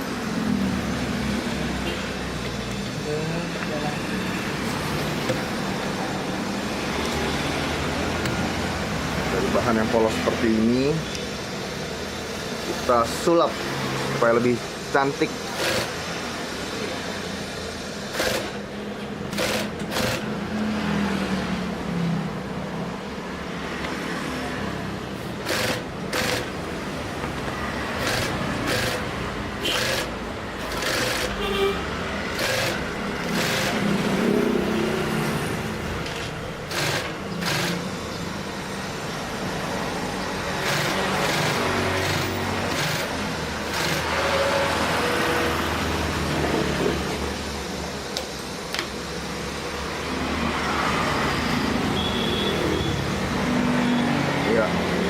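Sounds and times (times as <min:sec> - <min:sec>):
sewing machine stitching: 0:15.5 - 0:16.0, 0:18.1 - 0:18.6, 0:19.3 - 0:20.3, 0:25.4 - 0:26.6, 0:27.9 - 0:31.4, 0:32.3 - 0:33.9, 0:36.1 - 0:37.9, 0:40.5 - 0:44.5.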